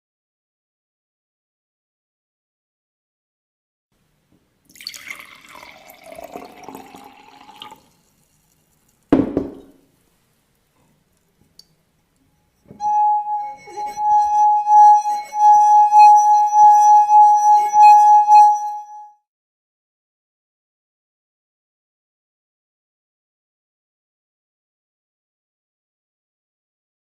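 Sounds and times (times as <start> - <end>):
water poured into glass: 4.7 - 9.0
glass set down knock: 9.2 - 9.8
singing wine glass tone: 12.4 - 19.2.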